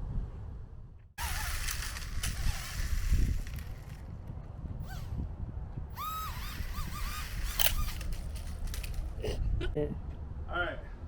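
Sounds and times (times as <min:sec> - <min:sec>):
wind rumble on microphone: 0:00.0 - 0:11.0
sharp click: 0:07.4 - 0:09.0.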